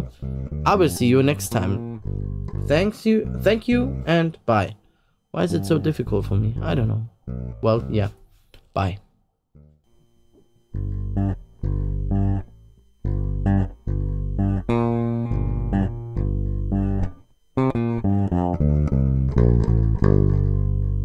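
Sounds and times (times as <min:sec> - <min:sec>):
plucked string instrument notes: 0:00.0 - 0:04.6, 0:05.4 - 0:08.2, 0:10.7 - 0:21.0.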